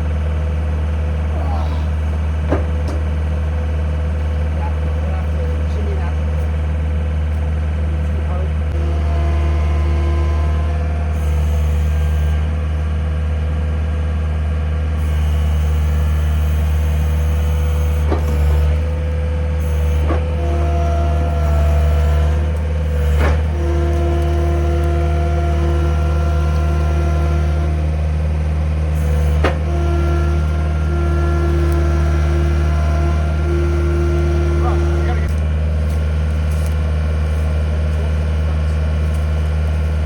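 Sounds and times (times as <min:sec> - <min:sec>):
engine running steadily: 0:00.0 - 0:40.0
sharp knocks: 0:02.5 - 0:03.1
higher machine tone: 0:08.7 - 0:12.8.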